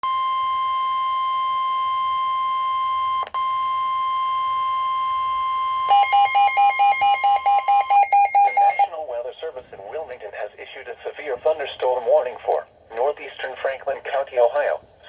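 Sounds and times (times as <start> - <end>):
steady alarm tone: 5.6 - 8.9
rapid beeping: 5.9 - 8.9.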